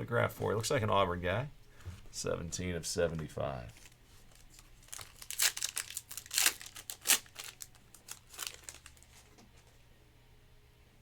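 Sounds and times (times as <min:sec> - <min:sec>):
plastic wrappers crinkling: 0:03.7 - 0:09.8.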